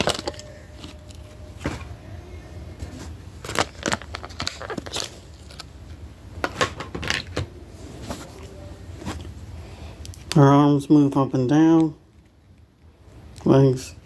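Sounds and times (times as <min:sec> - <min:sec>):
plastic toy package handling: 0:00.0 - 0:01.2, 0:03.4 - 0:05.8.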